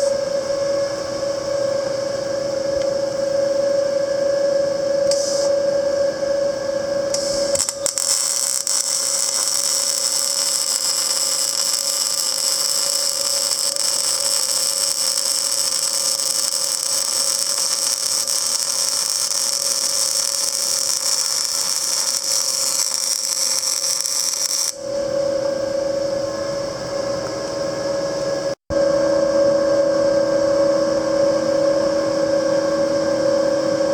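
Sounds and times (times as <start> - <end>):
welding arc sizzle: 5.1 - 5.5, 7.1 - 24.8.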